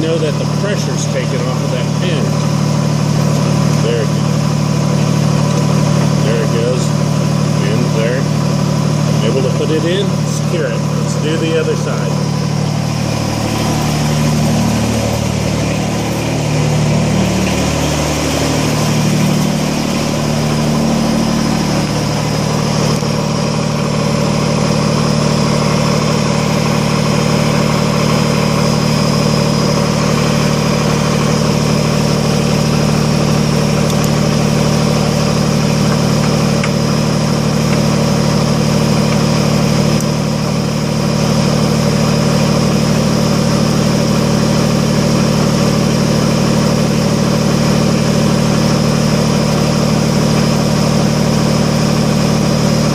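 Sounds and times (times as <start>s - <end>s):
tractor diesel engine running: 0.0s - 52.9s.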